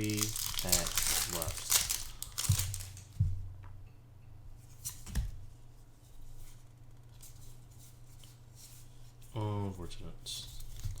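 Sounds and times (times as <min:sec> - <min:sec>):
cards rustling and tapping: 0:00.0 - 0:03.2, 0:10.5 - 0:11.0.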